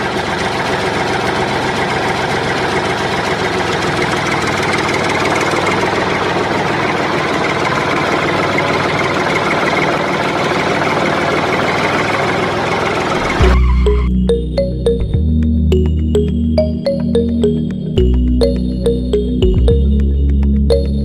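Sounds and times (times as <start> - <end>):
small motor rattling: 0.0 - 13.7.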